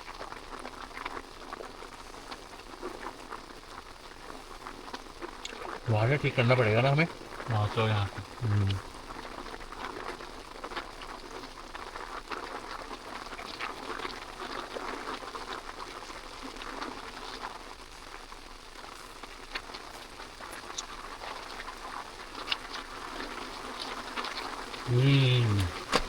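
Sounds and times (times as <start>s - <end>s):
steady rain falling: 0.0s - 9.7s, 17.6s - 26.0s
raindrops pattering: 0.0s - 16.6s, 17.9s - 26.0s.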